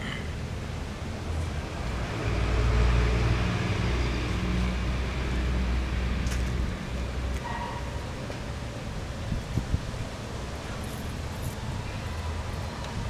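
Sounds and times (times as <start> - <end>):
engine running: 0.0 - 9.2.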